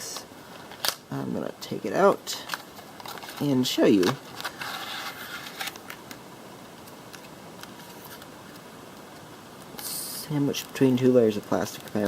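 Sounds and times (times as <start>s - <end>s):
cardboard and plastic packaging rustling: 0.0s - 1.1s, 2.2s - 6.2s, 6.8s - 8.7s, 10.4s - 12.0s
faint room hiss: 0.0s - 12.0s.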